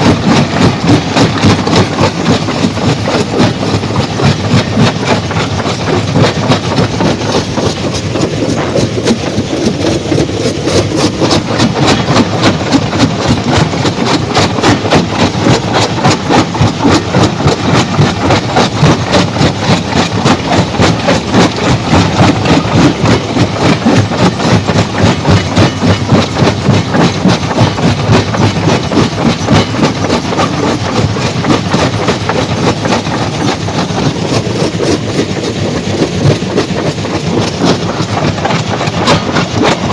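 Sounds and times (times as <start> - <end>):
stone-crushing machinery clattering: 0.0 - 39.9.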